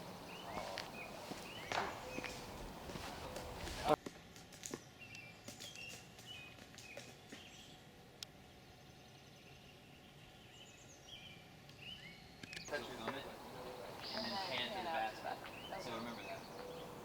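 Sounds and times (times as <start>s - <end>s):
birds chirping: 0.0s - 4.0s, 8.4s - 17.0s.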